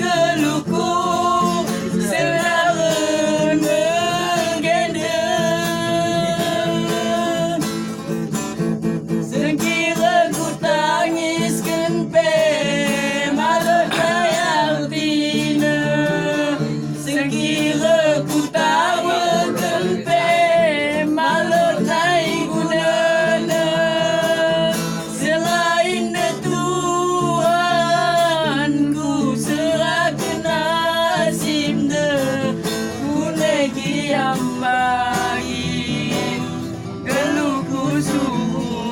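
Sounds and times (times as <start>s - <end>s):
guitar accompaniment: 0.0s - 38.9s.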